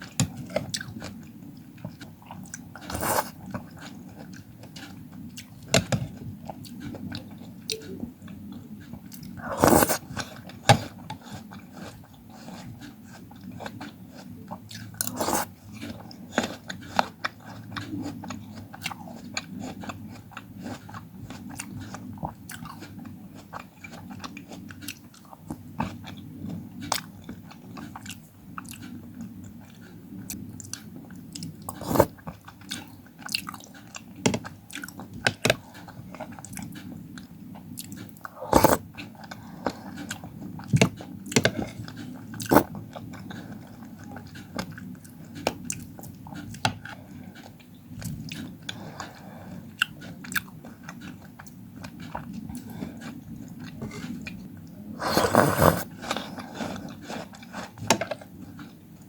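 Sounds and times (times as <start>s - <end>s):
steady low hum: 0.0s - 23.6s
crunchy fruit chewing: 0.0s - 59.0s.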